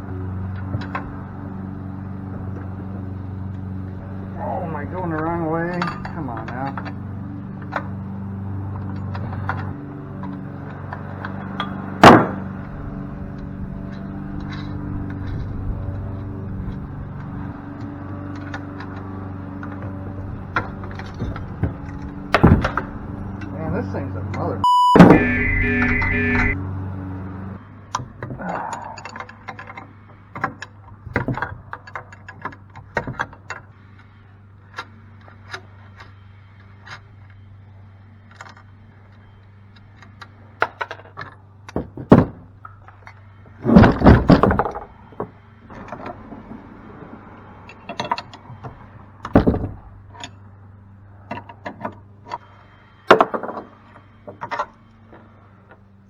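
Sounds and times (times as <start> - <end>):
metal parts knocking and clanking: 5.1 - 7.0, 40.0 - 46.2.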